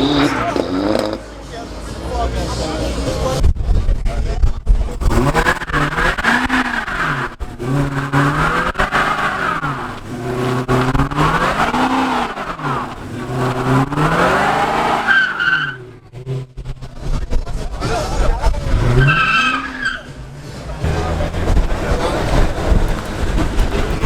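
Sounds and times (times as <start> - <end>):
car engine revving: 0.0 - 24.0
tyres squealing: 5.1 - 15.9, 18.8 - 24.0.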